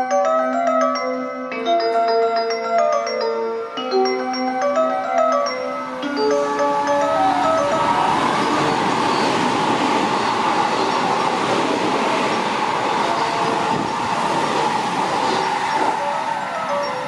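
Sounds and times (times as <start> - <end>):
train passing: 4.6 - 17.0.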